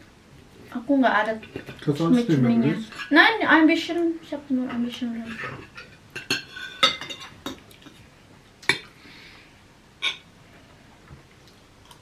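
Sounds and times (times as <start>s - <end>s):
cutlery clinking against plates: 5.2s - 8.0s, 10.0s - 10.3s.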